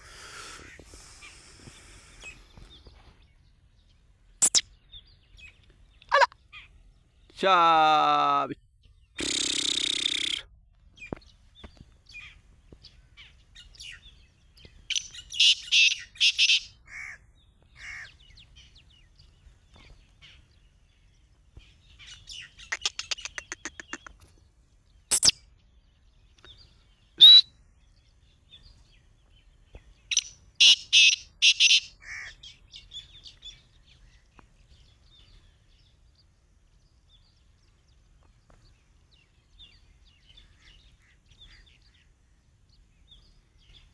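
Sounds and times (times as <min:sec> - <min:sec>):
bird calling harsh high notes: 0:04.4 - 0:04.6, 0:09.2 - 0:10.5, 0:27.2 - 0:27.5.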